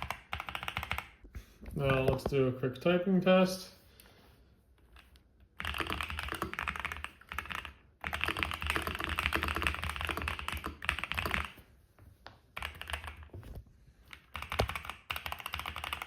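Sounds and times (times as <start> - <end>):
fast mechanical keyboard typing: 0.0 - 1.2, 5.0 - 11.6, 12.6 - 13.3, 14.0 - 16.0.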